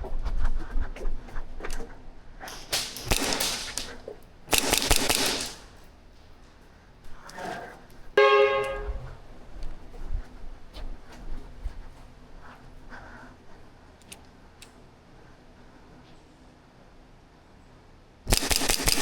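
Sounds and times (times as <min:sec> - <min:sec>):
airsoft guns firing bursts: 0:02.5 - 0:05.8, 0:18.3 - 0:19.0
brief pitched tone: 0:08.2 - 0:09.2.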